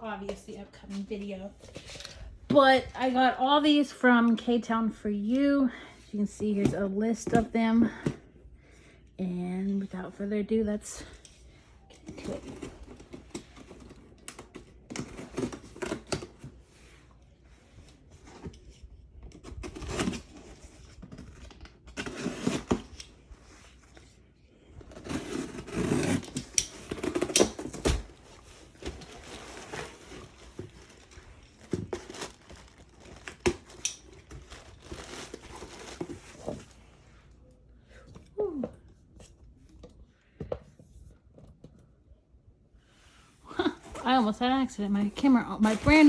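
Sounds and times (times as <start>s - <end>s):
tape tearing and crinkling: 19.3s - 23.2s, 24.8s - 36.7s
cardboard package being opened: 24.8s - 36.8s.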